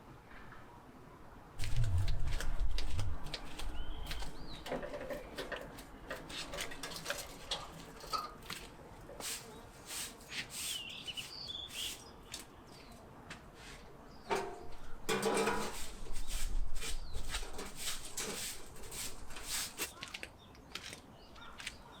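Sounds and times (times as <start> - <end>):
small birds chirping: 2.4 - 6.8, 9.3 - 13.1, 16.1 - 22.0.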